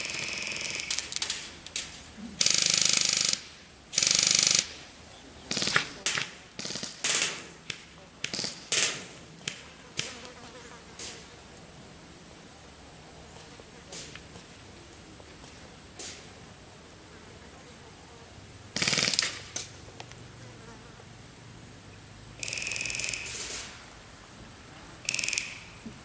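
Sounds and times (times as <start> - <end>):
airsoft gun bursts: 0.0 - 4.8, 5.5 - 10.2, 18.8 - 19.7, 22.4 - 23.9, 25.0 - 25.8.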